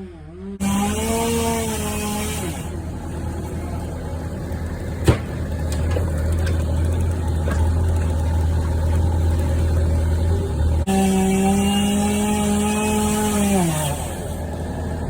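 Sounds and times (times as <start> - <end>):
large engine humming: 0.0 - 15.0
sharp crack: 5.0 - 6.6.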